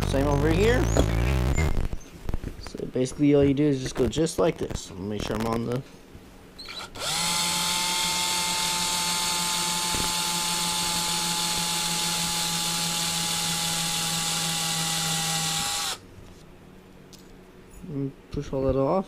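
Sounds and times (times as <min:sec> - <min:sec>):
power drill whining: 0:06.6 - 0:16.0.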